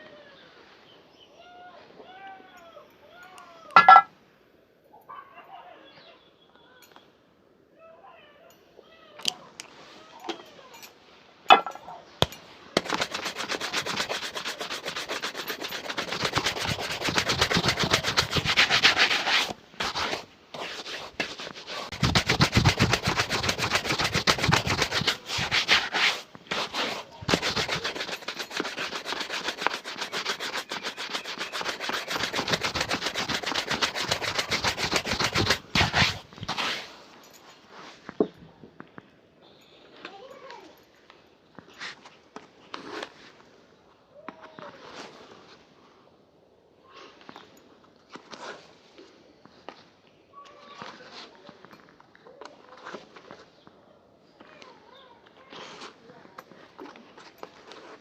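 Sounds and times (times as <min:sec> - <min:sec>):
shoe buffing strokes: 0:11.5 - 0:37.0.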